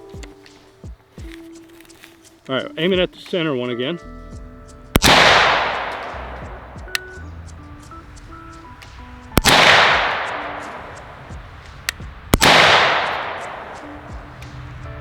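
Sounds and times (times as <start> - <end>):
rifle shots echoing: 4.9 - 15.0.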